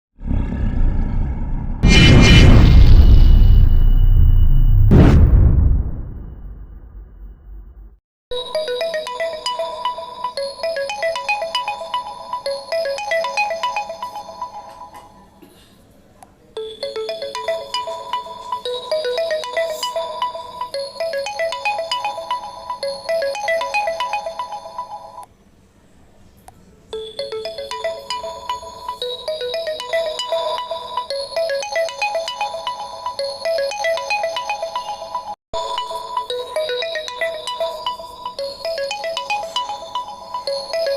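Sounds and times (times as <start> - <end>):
low rumbling boom: 0.7 - 8.0
phone ringtone bell-like melody: 8.3 - 15.4, 16.6 - 25.3, 27.0 - 40.9.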